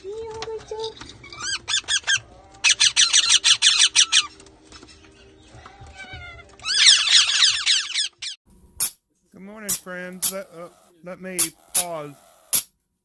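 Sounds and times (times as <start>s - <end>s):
baby parrots chirping: 1.2s - 5.4s, 6.6s - 8.3s, 10.2s - 12.7s.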